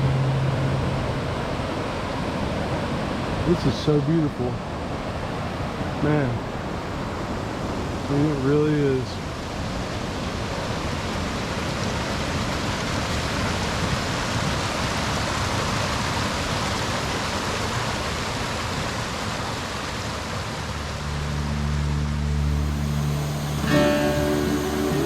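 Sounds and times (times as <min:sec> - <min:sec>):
guitar music: 0:00.0 - 0:01.2, 0:20.7 - 0:25.0
waterfall rushing: 0:00.0 - 0:25.0.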